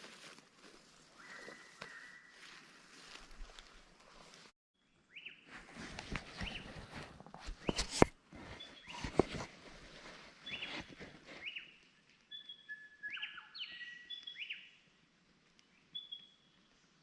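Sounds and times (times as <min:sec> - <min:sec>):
footsteps on forest floor: 0:00.0 - 0:04.5, 0:05.5 - 0:11.6
birds whistling and chirping: 0:01.2 - 0:02.4, 0:06.4 - 0:06.7, 0:10.4 - 0:11.7, 0:12.3 - 0:14.7, 0:15.9 - 0:16.4.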